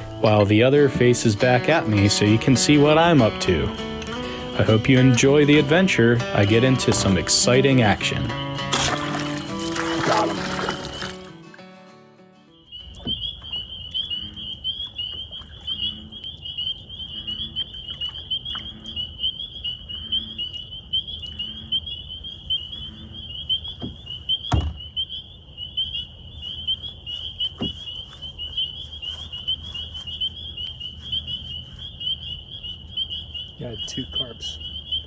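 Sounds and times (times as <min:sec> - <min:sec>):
frogs chirping: 0:00.0 - 0:11.7, 0:12.5 - 0:35.0
handling and water noise: 0:01.4 - 0:11.7, 0:12.7 - 0:19.1, 0:26.6 - 0:32.0.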